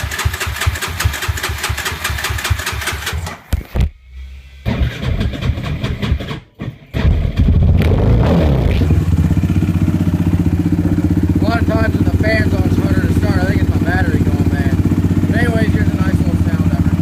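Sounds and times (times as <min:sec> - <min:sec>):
electric starter cranking engine: 0:00.0 - 0:03.5, 0:04.2 - 0:09.2
engine running and revving: 0:04.7 - 0:17.0.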